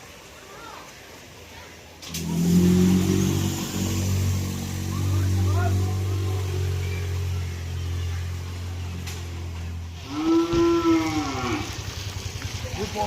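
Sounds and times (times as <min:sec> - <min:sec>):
low rapid pulsing: 0:02.0 - 0:10.2
vehicle engine humming: 0:02.0 - 0:13.0
loud long rising and falling call: 0:02.1 - 0:08.7.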